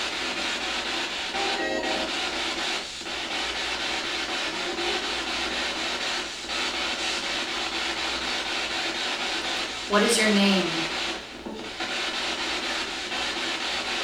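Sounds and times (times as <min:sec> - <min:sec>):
choppy radio static: 0:00.9 - 0:13.4
radio broadcast fragment: 0:09.9 - 0:11.2.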